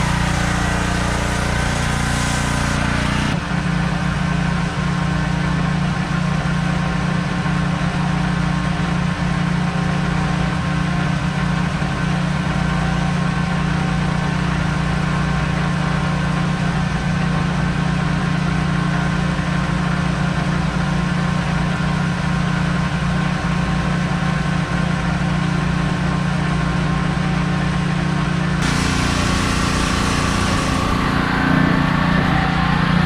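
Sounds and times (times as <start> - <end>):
pressure washer engine humming: 0.0 - 3.4, 28.6 - 33.0
pressure washer hiss: 0.0 - 3.4, 28.6 - 32.8.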